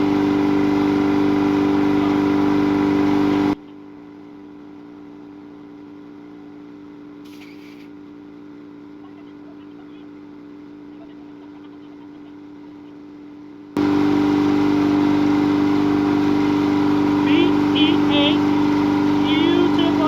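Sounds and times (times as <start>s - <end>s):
machine humming: 0.0s - 3.6s, 13.8s - 20.0s
short hiss: 7.2s - 7.9s.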